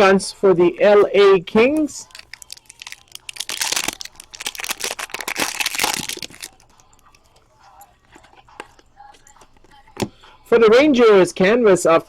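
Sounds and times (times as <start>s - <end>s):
wrapper crinkling and tearing: 2.0s - 7.1s.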